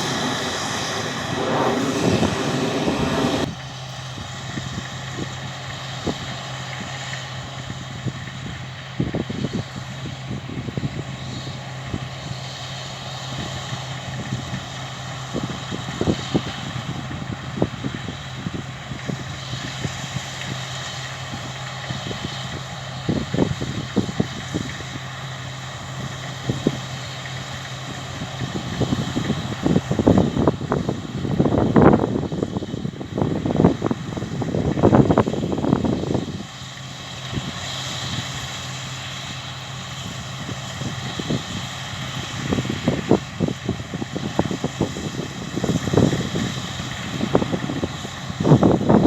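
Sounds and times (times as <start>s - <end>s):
rushing machine noise: 0.0s - 3.5s
combine harvester engine drone: 0.0s - 49.0s.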